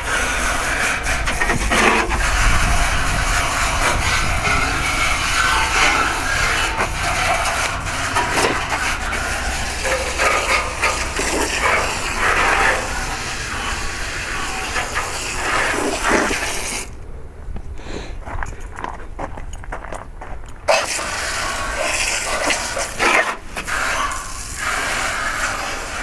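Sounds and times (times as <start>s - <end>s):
hose nozzle spraying water: 0.0s - 17.0s, 20.7s - 26.0s
steady low hum: 0.0s - 26.0s.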